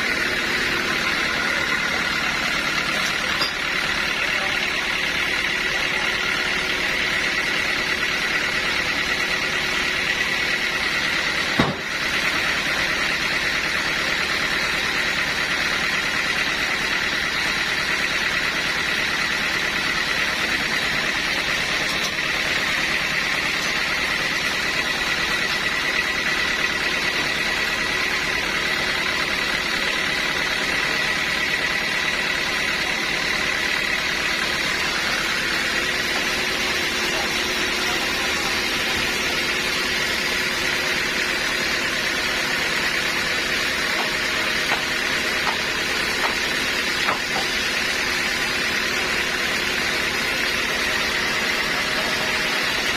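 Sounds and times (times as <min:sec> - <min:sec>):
sawmill saw whining: 0:00.0 - 0:52.9
sharp knock: 0:11.6 - 0:11.9.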